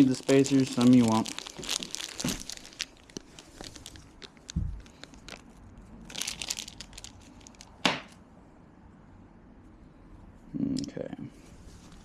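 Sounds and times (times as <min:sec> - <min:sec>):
crackly flurry: 0:00.0 - 0:07.8
packaging crinkling: 0:00.0 - 0:07.8.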